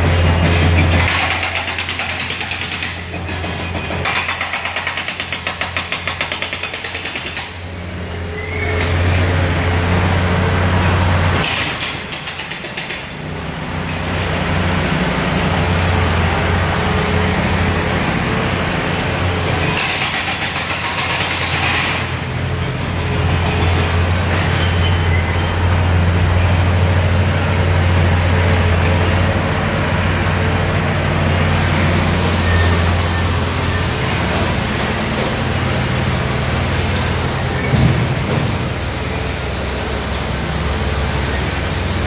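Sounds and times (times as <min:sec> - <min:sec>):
construction machinery engine drone: 0:00.0 - 0:42.0.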